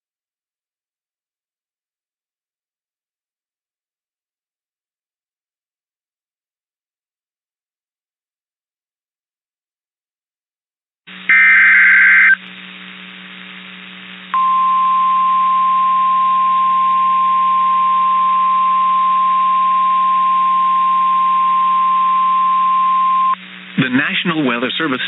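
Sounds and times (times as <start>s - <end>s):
radio hiss and hum: 11.1s - 25.0s.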